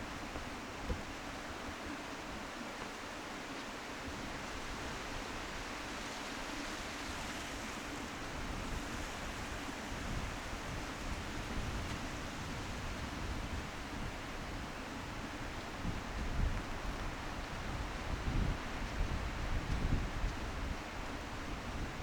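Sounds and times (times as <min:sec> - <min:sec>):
wind gusts buffeting microphone: 0:08.2 - 0:22.0.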